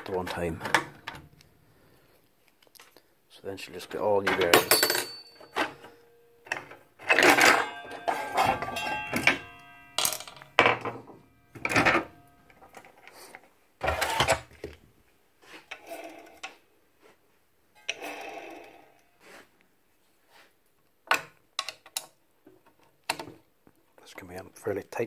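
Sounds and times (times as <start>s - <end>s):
metal tools clinking: 4.1s - 13.4s.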